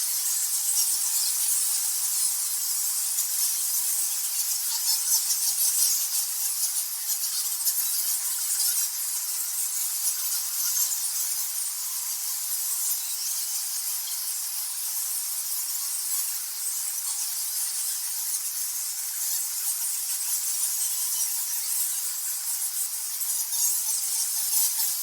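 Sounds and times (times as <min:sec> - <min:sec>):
bats squeaking and chittering: 0:15.2 - 0:25.0.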